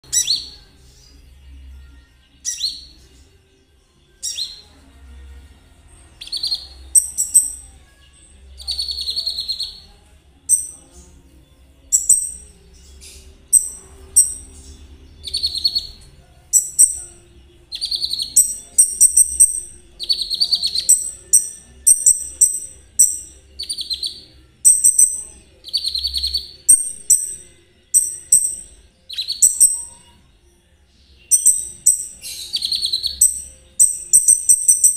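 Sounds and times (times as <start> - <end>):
sunbird singing trilled phrases: 8.6 - 9.9, 16.6 - 27.4, 28.0 - 30.1, 31.3 - 34.9.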